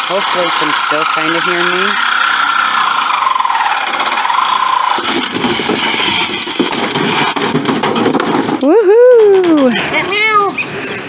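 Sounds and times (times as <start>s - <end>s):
power tool whining: 0.0s - 8.2s.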